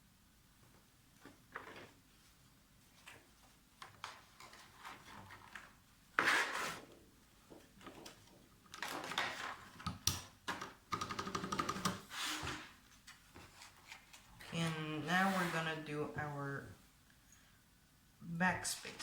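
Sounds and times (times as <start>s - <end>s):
keycaps clicking and clacking: 10.1s - 12.0s.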